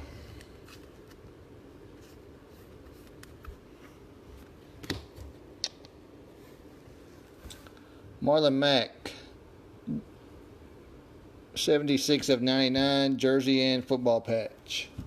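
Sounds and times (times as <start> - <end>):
cards rustling: 0.2 - 5.2.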